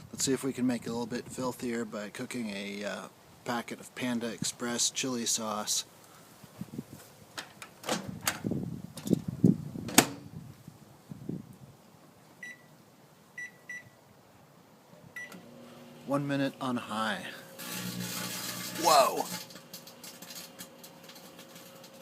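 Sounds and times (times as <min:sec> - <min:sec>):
short keypad beeps: 0:12.4 - 0:12.7, 0:13.4 - 0:14.0.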